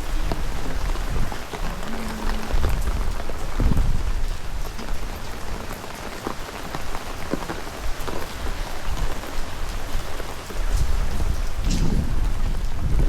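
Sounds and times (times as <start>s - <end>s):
water drops ticking: 0.0s - 9.3s
steady rain falling: 0.0s - 13.0s.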